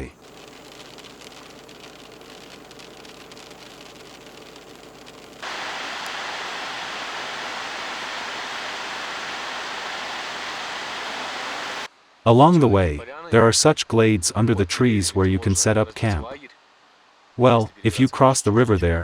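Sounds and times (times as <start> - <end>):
faint hiss: 0.0 - 12.6
white water rushing: 5.4 - 11.9.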